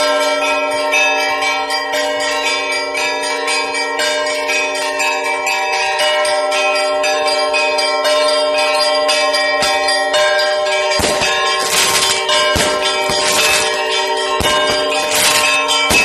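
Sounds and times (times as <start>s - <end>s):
church bells ringing a peal: 0.0s - 16.0s.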